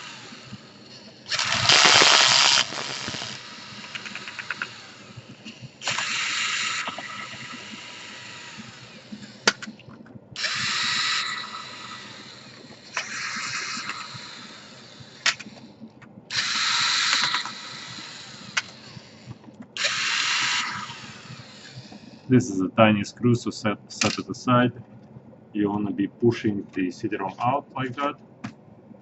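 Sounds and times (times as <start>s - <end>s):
electric screwdriver whirring: 0.0s - 22.3s
sharp clicks: 1.0s - 4.9s, 15.0s - 22.1s.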